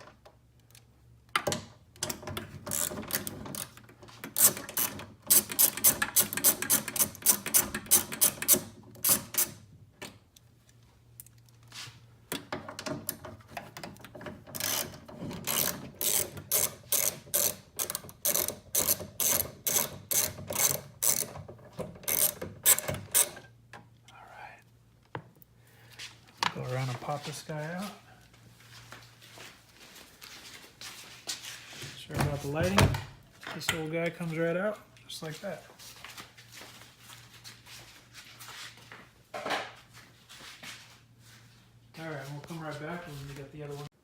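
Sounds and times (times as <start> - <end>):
hand ratchet clicking: 2.7 - 9.6, 14.5 - 21.4, 22.0 - 23.4.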